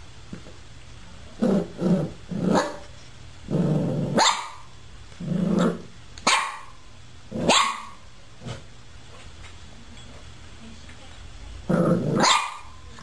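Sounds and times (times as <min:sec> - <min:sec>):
dog barking: 0:04.2 - 0:04.7, 0:06.2 - 0:06.8, 0:07.4 - 0:08.0, 0:12.2 - 0:12.8.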